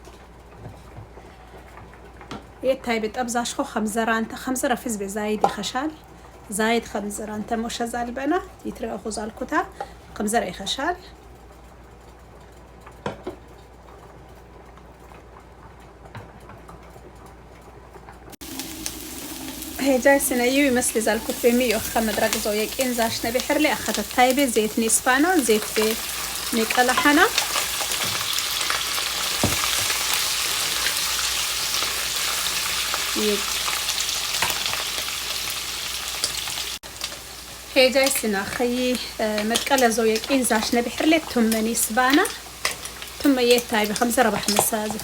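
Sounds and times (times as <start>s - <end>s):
food sizzling in oil: 18.4s - 45.0s
stirring utensil knocks: 29.3s - 30.0s.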